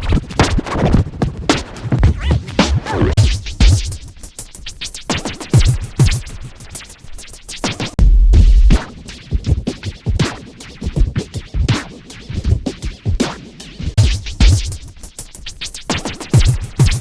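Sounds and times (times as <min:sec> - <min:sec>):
drum machine beat: 0:00.0 - 0:17.0
deep bass boom: 0:08.0 - 0:08.8.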